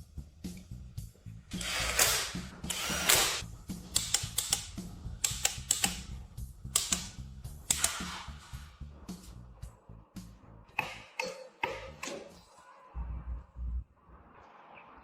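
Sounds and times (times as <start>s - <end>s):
soft background music: 0.0s - 14.0s
tool rasping: 1.5s - 3.4s
sharp metallic clicks: 1.6s - 6.1s, 6.7s - 8.2s.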